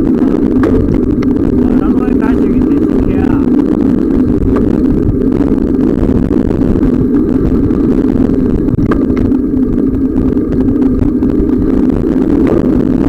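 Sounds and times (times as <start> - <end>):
bicycle tyre and frame noise: 0.0 - 13.0
wind buffeting microphone: 0.0 - 13.0.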